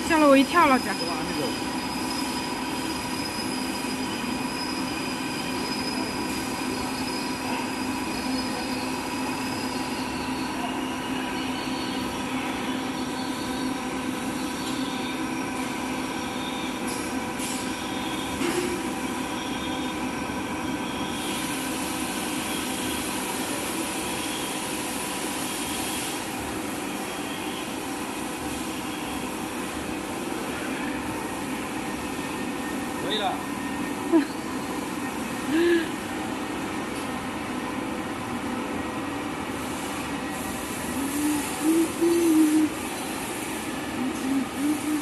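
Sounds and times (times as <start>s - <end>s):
machinery whining tones: 0.0s - 23.0s, 39.9s - 45.0s
factory machinery hum and hiss: 0.0s - 45.0s.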